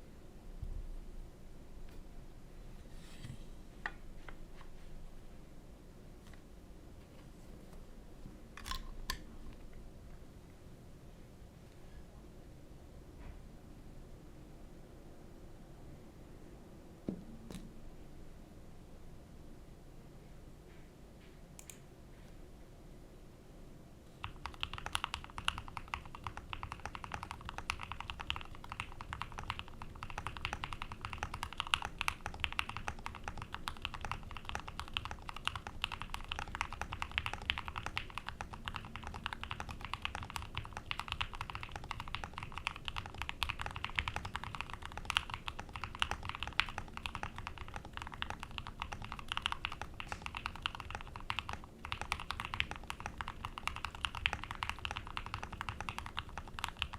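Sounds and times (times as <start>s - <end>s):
typing on mechanical keyboard: 24.2s - 56.9s.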